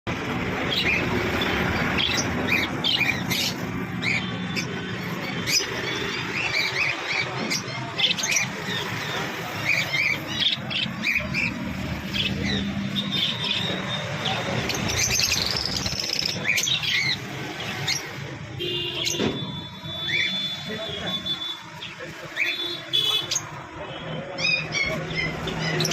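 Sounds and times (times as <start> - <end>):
lovebirds chirping and squawking: 0.2 - 18.4, 19.0 - 25.9.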